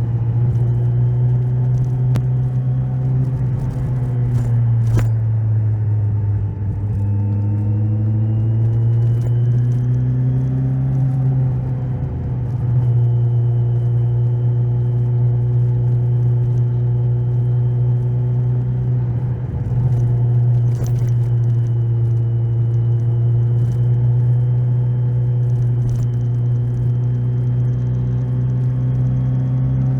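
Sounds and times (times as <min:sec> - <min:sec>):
motorcycle engine revving: 0:00.0 - 0:05.2, 0:18.4 - 0:29.9.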